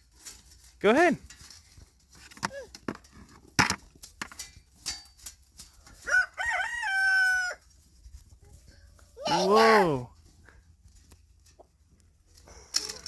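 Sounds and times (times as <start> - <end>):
rooster crowing: 6.0 - 7.6.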